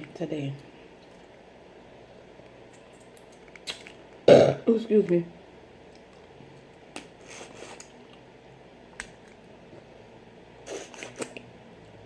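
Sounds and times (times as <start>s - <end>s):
wet clicks and smacks: 2.7s - 4.1s, 9.0s - 9.4s
person eating shellfish: 6.9s - 8.3s, 10.6s - 11.5s.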